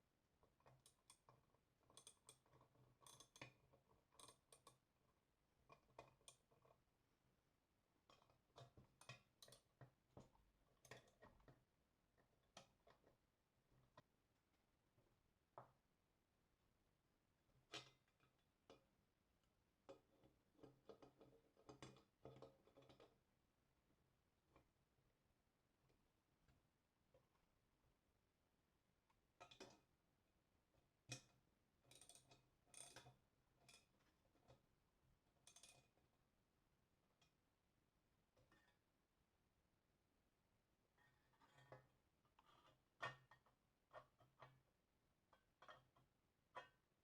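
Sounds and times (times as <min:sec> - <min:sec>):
small taps and clinks: 0:00.4 - 0:04.9, 0:08.0 - 0:11.6, 0:19.8 - 0:23.2, 0:29.4 - 0:29.9, 0:31.0 - 0:34.6, 0:35.4 - 0:36.1, 0:41.4 - 0:44.7, 0:45.3 - 0:46.9
clicks and taps of metal parts: 0:00.6 - 0:04.8, 0:31.1 - 0:34.0.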